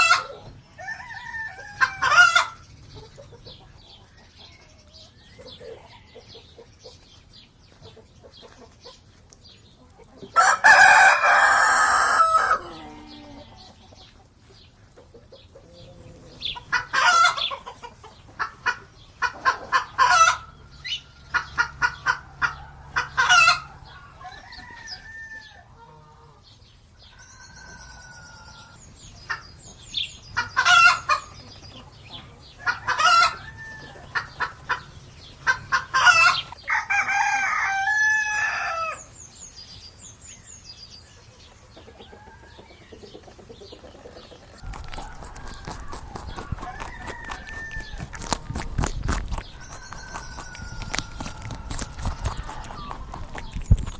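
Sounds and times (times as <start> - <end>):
rooster crowing: 0.0 - 2.6, 10.4 - 13.2, 30.8 - 43.2, 46.6 - 48.0
chickens clucking and squawking: 0.0 - 53.7.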